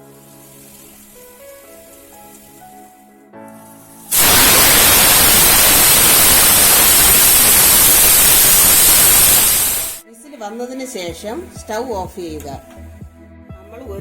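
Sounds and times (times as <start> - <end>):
pressure cooker whistling: 4.1 - 10.0.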